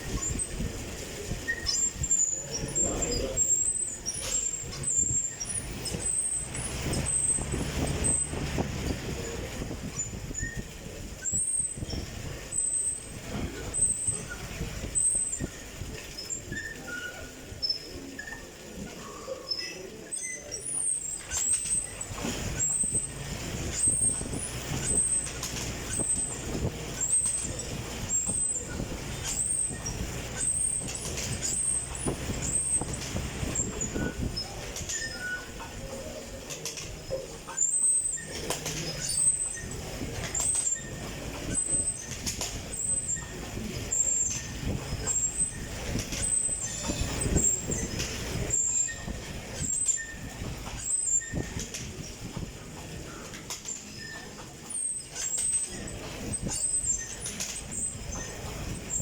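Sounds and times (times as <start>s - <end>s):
exercise bike whirring hum: 0.0s - 59.0s
high squeak: 11.2s - 36.2s, 36.9s - 52.1s, 52.8s - 59.0s.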